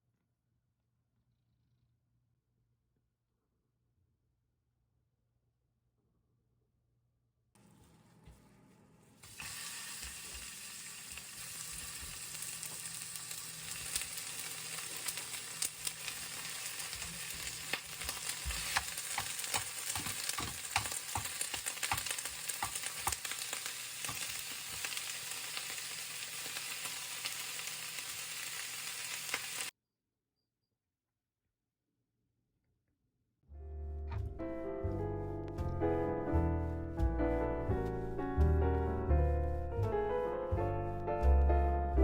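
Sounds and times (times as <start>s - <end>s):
food sizzling in a pan: 9.2s - 29.7s
oil crackling and popping: 9.2s - 29.7s.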